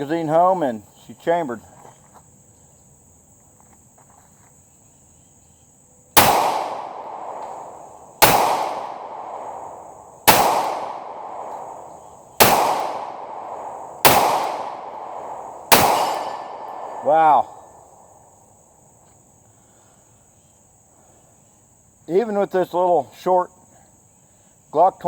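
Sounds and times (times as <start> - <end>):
pistol shots with ringing tail: 6.2 - 17.8.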